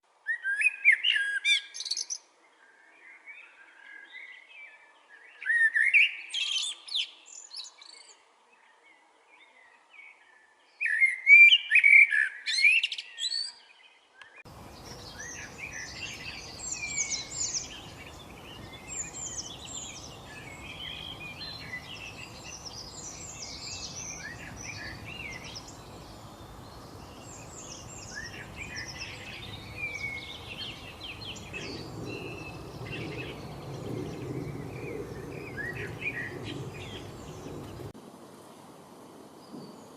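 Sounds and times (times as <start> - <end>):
songbird singing: 0.2 - 38.7, 39.3 - 39.9
many birds chirping: 0.4 - 38.0
steady background noise: 14.5 - 39.4.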